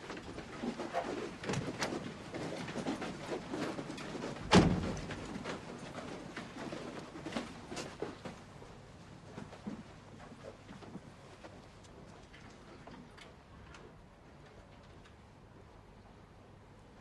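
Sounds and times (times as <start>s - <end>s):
loud thump: 4.5s - 5.0s.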